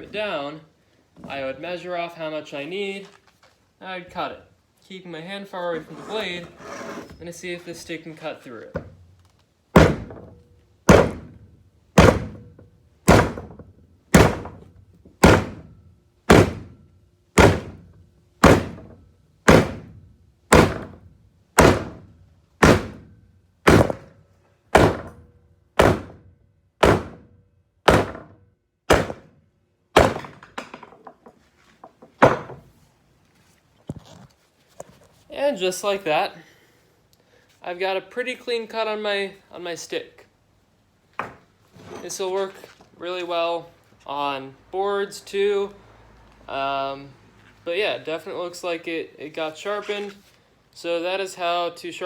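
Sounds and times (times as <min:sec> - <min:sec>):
hatchet chopping wood: 0:09.8 - 0:16.8, 0:17.4 - 0:24.2, 0:24.8 - 0:29.3, 0:30.0 - 0:30.8.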